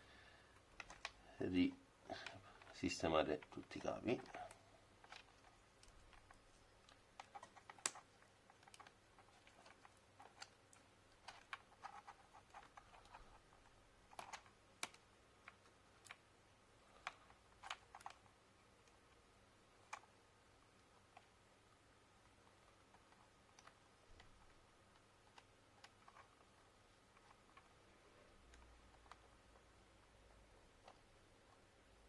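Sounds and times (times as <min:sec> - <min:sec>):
plastic parts clicking: 0:00.6 - 0:01.2.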